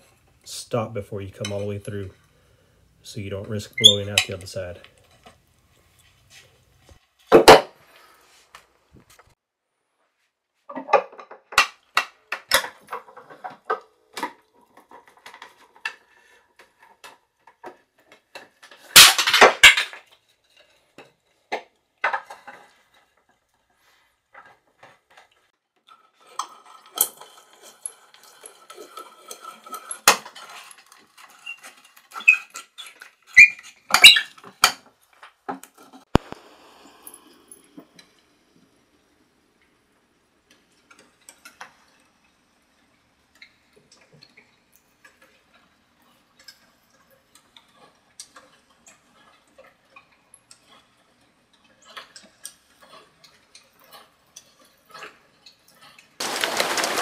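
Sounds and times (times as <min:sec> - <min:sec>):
loud clatter: 0:56.2 - 0:57.0.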